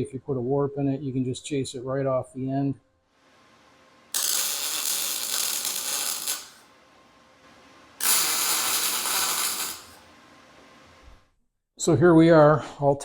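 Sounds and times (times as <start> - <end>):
welding arc hissing: 4.1 - 6.7, 8.0 - 10.1.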